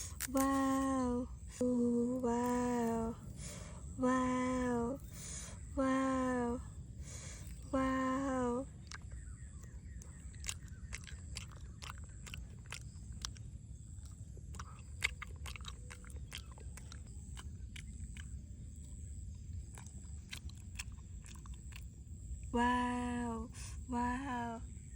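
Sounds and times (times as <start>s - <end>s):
small irregular clicks and crunches: 0.0s - 0.8s
low steady hum: 0.0s - 24.9s.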